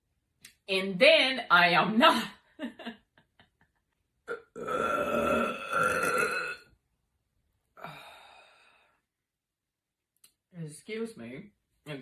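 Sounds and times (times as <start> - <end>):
woman belching: 4.3 - 6.7.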